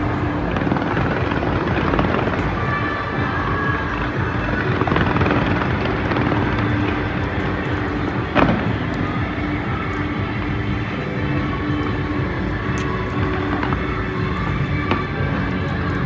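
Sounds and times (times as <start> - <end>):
fireworks bursting: 0.0 - 16.0
fireworks crackling: 0.0 - 16.0.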